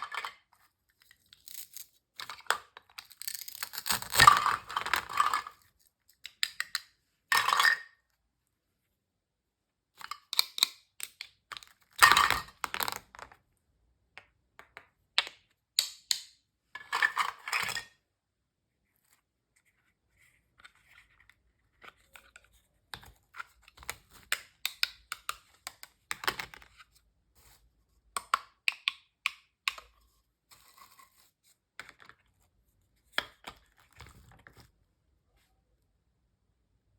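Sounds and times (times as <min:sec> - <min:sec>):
toy food pieces clicking and tapping: 0:10.2 - 0:13.2, 0:14.6 - 0:16.4, 0:23.7 - 0:26.5, 0:28.2 - 0:29.9.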